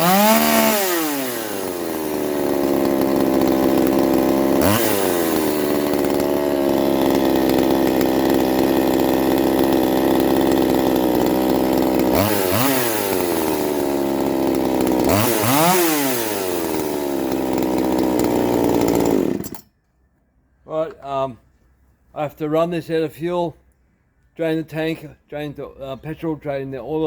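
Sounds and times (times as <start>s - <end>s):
chainsaw running at high speed: 0.0s - 19.6s.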